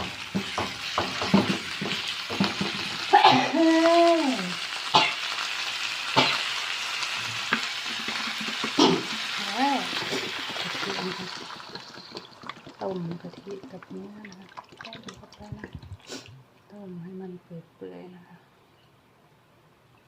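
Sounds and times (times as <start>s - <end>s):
meat sizzling in oil: 0.0s - 14.0s.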